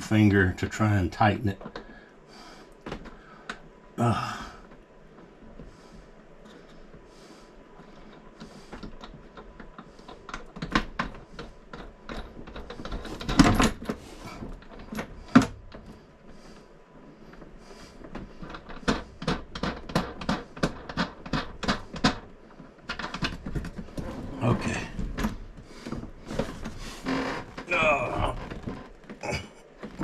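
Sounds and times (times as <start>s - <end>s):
hands and tools clicking: 7.8s - 16.0s, 17.3s - 24.1s.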